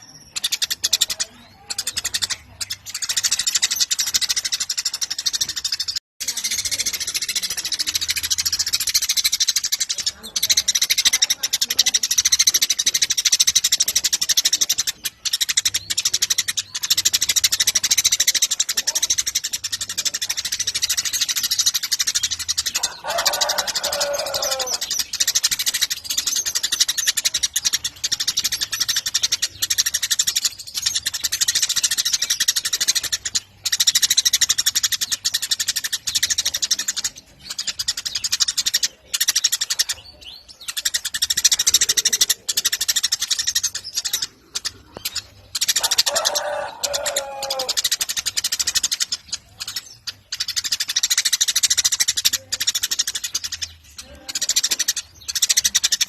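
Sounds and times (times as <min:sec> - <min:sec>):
flock of sparrows chirping: 0:00.0 - 0:56.0
low drawn-out descending bird call: 0:22.7 - 0:25.1, 0:45.8 - 0:47.9.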